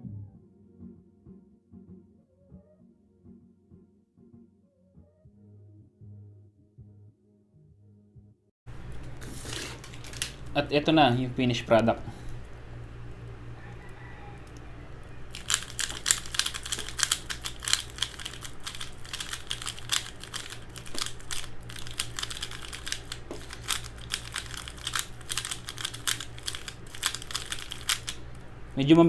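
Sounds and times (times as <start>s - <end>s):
puzzle cube plastic clicks: 15.3s - 28.2s.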